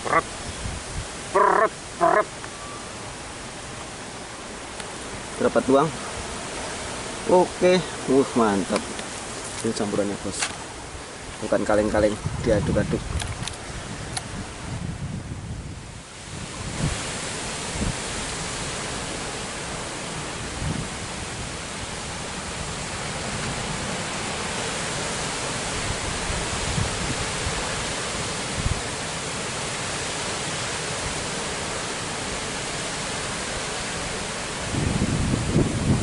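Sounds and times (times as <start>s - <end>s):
wind gusts buffeting microphone: 0.0s - 2.4s, 5.0s - 36.0s
strong wind rushing: 11.8s - 18.4s, 34.6s - 36.0s.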